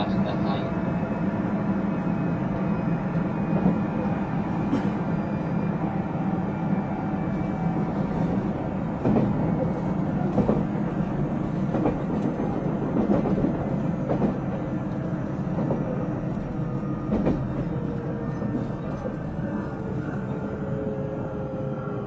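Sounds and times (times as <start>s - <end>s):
train wheel and rail rumble: 0.0s - 22.0s
rail joint clacks: 8.1s - 19.2s.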